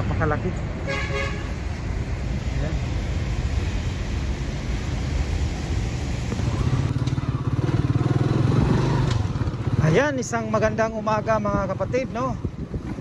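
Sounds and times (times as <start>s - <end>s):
motorcycle engine running: 6.4s - 13.0s.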